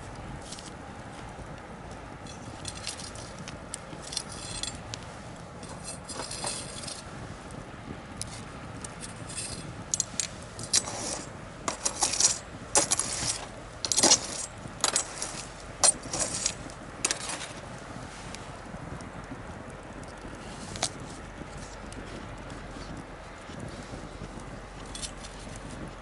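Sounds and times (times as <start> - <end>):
sharp pops of burning wood: 0.0 - 4.1, 4.7 - 26.0
bonfire crackling: 0.0 - 26.0.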